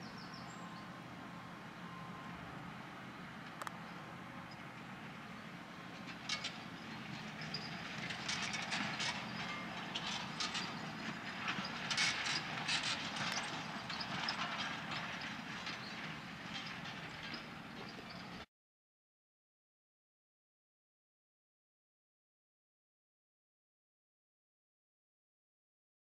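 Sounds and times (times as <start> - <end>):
tractor engine humming: 0.0 - 18.5.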